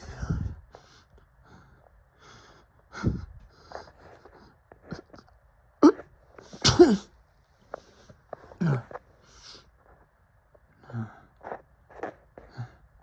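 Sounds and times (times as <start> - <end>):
loud sneeze: 5.8 - 7.1.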